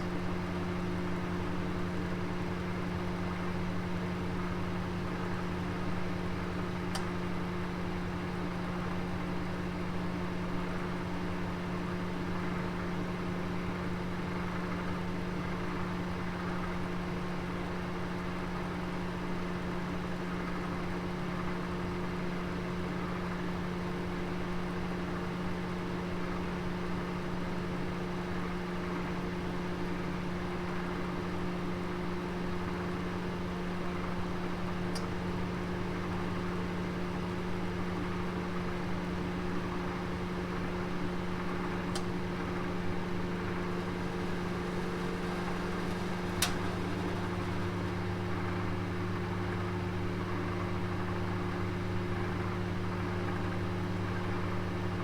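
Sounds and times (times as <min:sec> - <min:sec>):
oven humming: 0:32.2 - 0:55.0
faint tick: 0:45.2 - 0:47.2.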